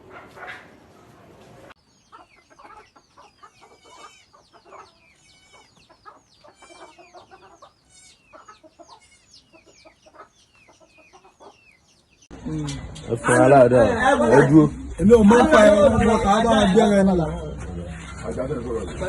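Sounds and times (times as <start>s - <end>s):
hen clucks: 0.0s - 1.1s, 1.8s - 13.4s
chicks peeping: 0.0s - 13.6s, 15.2s - 19.0s.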